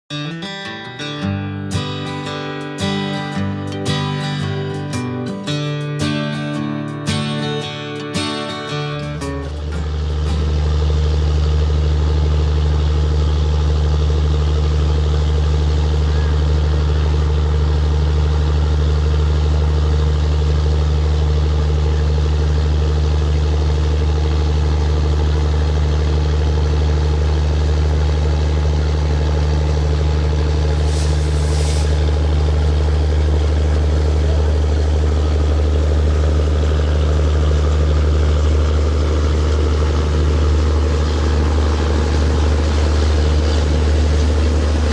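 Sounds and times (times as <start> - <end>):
diesel locomotive engine idling: 1.7 - 44.9
faint hiss: 30.4 - 34.6.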